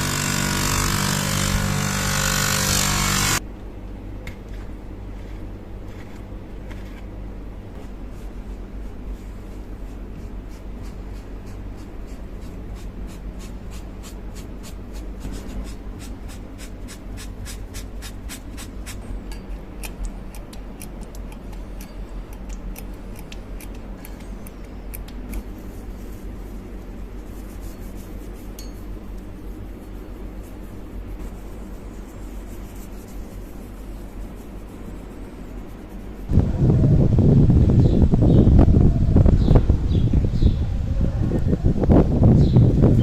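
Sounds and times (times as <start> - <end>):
steady low hum: 0.0 - 43.0
hand tool clicks and scraping: 17.5 - 25.5.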